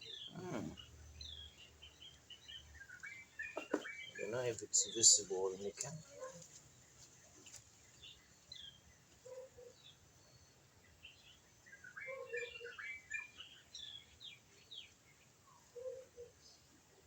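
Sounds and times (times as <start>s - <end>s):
short lower bird calls: 0.0s - 1.0s
small birds chirping: 0.0s - 17.0s.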